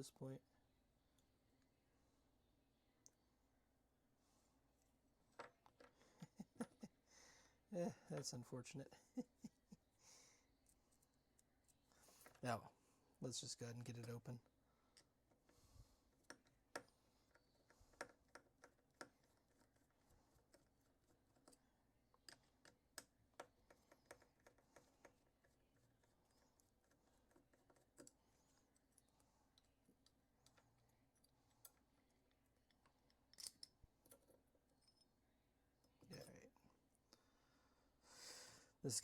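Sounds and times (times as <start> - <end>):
tools clicking and tapping: 14.9 - 35.1.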